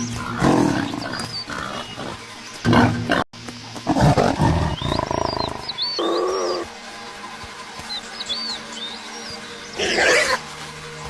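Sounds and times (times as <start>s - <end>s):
low roar-like animal calls: 0.1s - 6.8s, 9.8s - 10.4s
pitched animal call: 3.9s - 6.7s, 9.8s - 10.4s.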